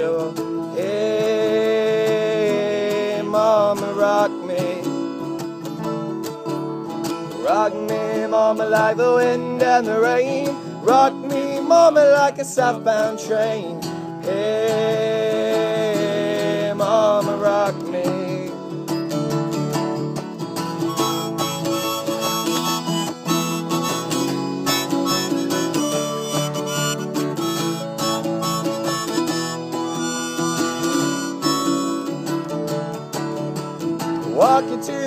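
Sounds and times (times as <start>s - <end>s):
acoustic guitars strumming: 0.0s - 35.0s
harmonica melody: 13.8s - 35.0s.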